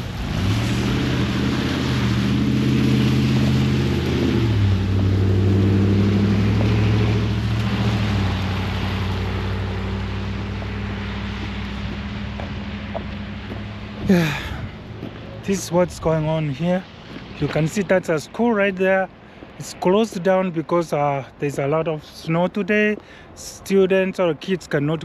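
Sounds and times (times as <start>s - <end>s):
vehicle engine driving past: 0.0s - 16.2s.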